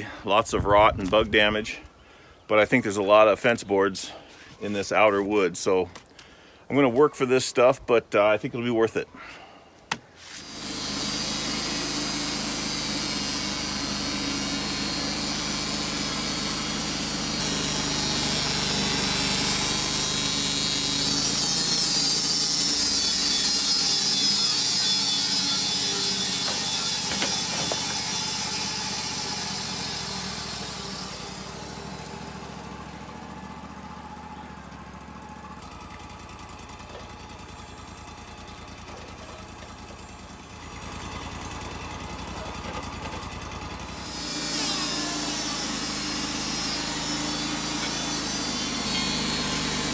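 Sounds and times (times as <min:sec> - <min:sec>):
hissing saw cut: 0:10.2 - 0:33.1, 0:43.7 - 0:49.9
bandsaw mill engine running: 0:10.2 - 0:49.9.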